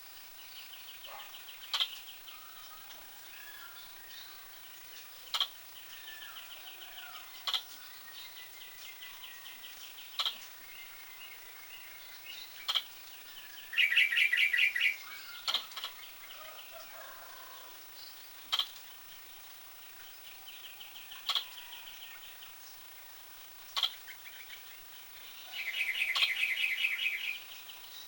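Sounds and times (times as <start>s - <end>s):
birds chirping and trilling: 0.5s - 28.0s
squirrel hiccuping clicks: 5.4s - 5.6s.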